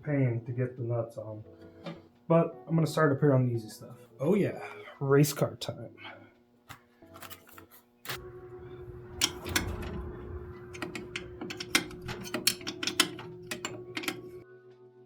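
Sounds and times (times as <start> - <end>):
hand tools clicking and tapping: 6.7 - 14.4
background music with held organ note: 7.0 - 15.0.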